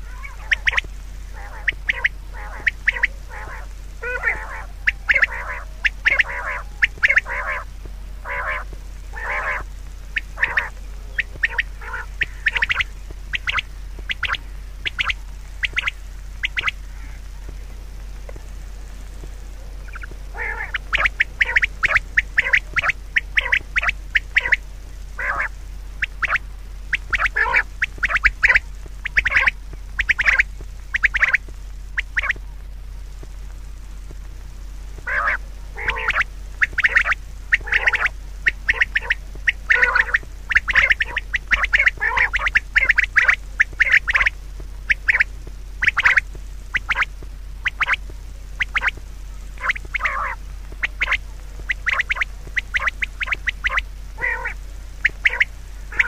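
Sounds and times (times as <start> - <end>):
short harsh bird calls: 0.0 - 17.4, 49.6 - 56.0
steady low hum: 0.0 - 56.0.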